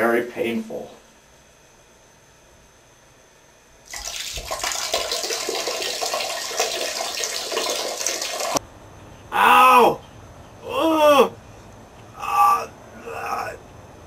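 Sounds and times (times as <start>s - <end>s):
liquid splashing into toilet bowl: 3.9s - 8.6s.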